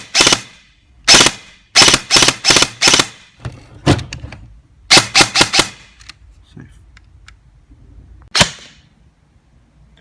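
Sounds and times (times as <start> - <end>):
airsoft gun firing: 0.0 - 3.3, 4.9 - 6.0, 8.3 - 8.9.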